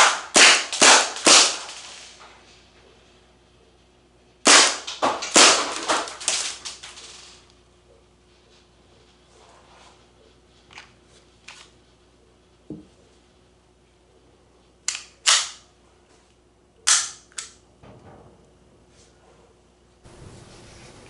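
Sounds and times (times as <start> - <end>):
silenced airsoft pistol shots: 0.0 - 1.8, 4.5 - 6.2, 15.2 - 15.6.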